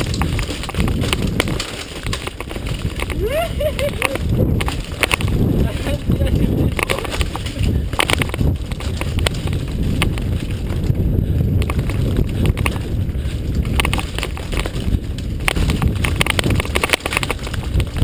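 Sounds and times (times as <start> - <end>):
bike rattling clicks: 0.0 - 18.0
tyres rumbling over dirt: 0.0 - 18.0
wind buffeting microphone: 0.0 - 18.0.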